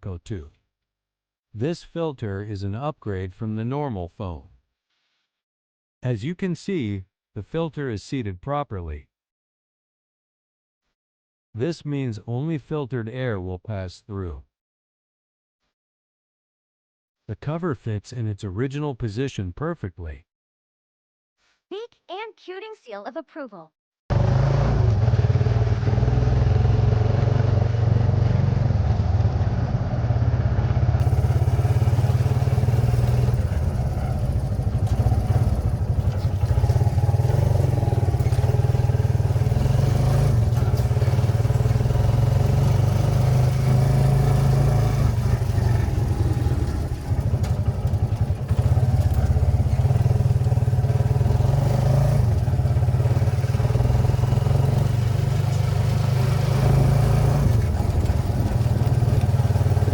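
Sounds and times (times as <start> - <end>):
motorcycle engine running: 24.1 - 59.9.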